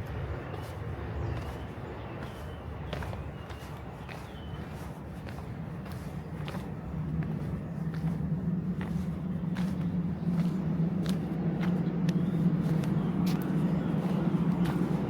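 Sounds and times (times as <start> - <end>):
footsteps walking: 0.0 - 15.0.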